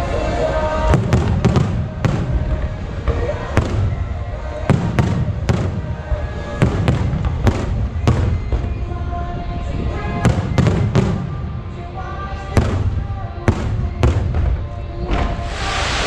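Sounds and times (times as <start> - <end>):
music playing: 0.0 - 16.0
fireworks bursting with bangs: 0.6 - 9.0, 10.0 - 11.6, 12.5 - 16.0.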